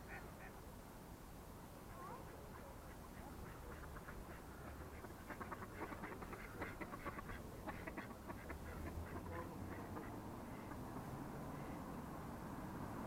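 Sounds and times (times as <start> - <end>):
ducks quacking: 2.2 - 10.9.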